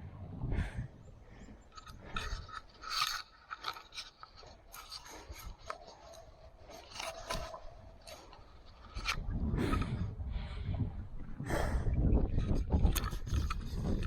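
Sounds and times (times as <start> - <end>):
rustling and scraping handling noise: 1.6 - 9.8, 12.5 - 14.0.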